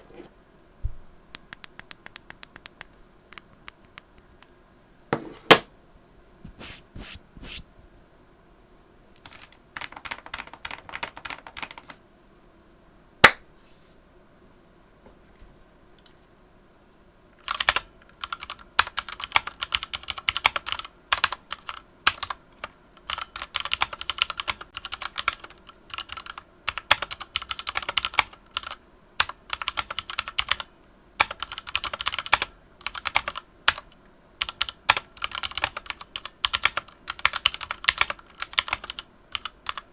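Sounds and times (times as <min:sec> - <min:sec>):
typing on mechanical keyboard: 0:09.2 - 0:12.0, 0:17.4 - 0:39.9.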